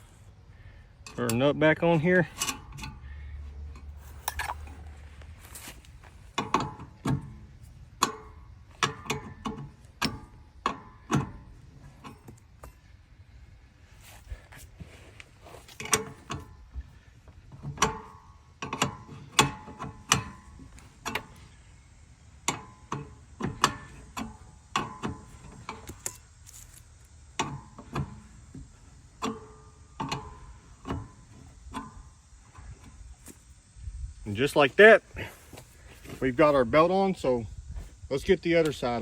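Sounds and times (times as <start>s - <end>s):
hand tools clanking on metal: 1.0s - 13.0s, 14.0s - 21.7s, 22.3s - 33.4s.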